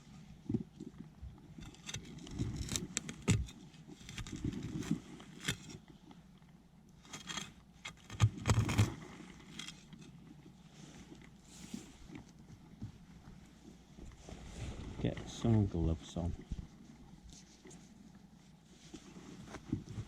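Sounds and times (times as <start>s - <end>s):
digging in soil: 1.5s - 5.9s, 7.0s - 10.2s.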